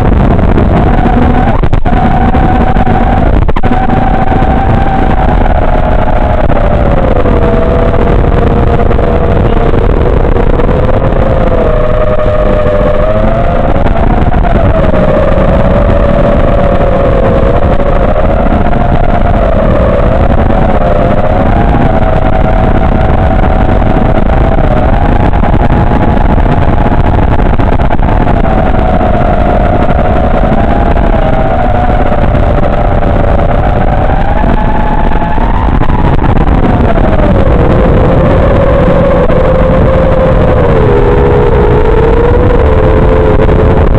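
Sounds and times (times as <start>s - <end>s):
drone motors and propellers whining: 0.0s - 43.9s
wind and prop wash rushing: 0.0s - 43.9s.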